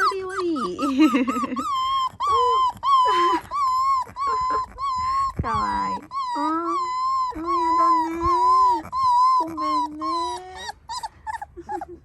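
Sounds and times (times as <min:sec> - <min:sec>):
puppy whining: 0:00.0 - 0:12.0.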